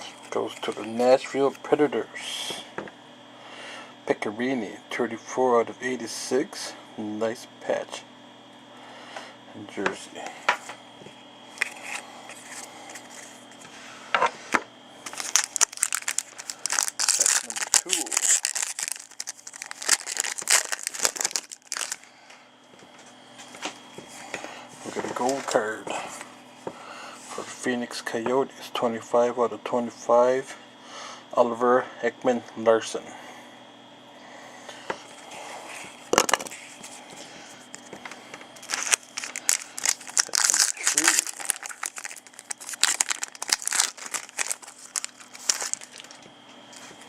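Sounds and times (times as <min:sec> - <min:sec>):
card packaging crinkling and tearing: 0:00.2 - 0:01.2, 0:11.6 - 0:13.4, 0:15.0 - 0:22.0, 0:36.1 - 0:37.0, 0:38.6 - 0:46.2.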